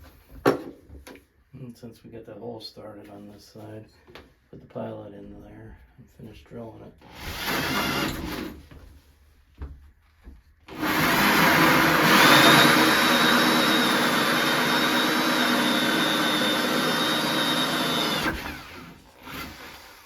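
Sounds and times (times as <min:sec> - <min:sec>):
electric drill cutting wood: 0:07.1 - 0:08.6, 0:10.7 - 0:20.0.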